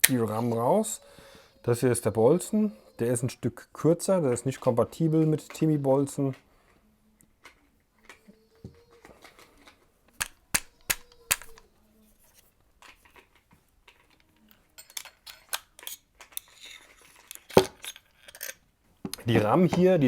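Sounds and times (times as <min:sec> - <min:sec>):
small metal parts clicking: 0:12.8 - 0:18.6.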